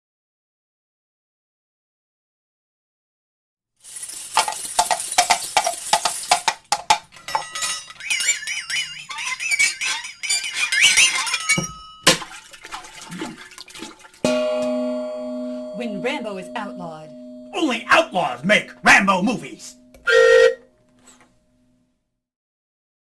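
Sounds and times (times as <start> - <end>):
ringing knocks: 7.2 - 12.3, 14.3 - 20.1
high warbling squeaks: 7.9 - 11.5.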